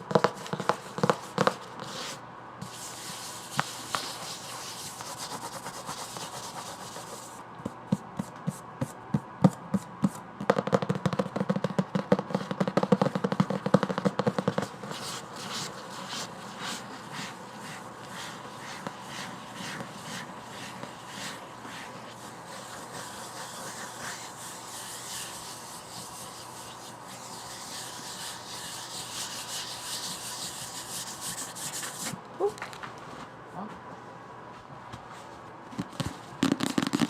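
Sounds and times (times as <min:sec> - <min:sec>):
fingers tapping on a book: 0:00.0 - 0:01.9, 0:05.0 - 0:16.8
scratchy rubbing on a book: 0:00.1 - 0:07.4, 0:13.7 - 0:32.2.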